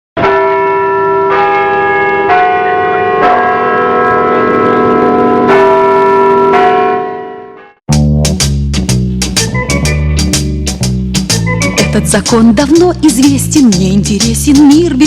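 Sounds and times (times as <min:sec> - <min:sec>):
bells ringing: 0:00.2 - 0:07.8.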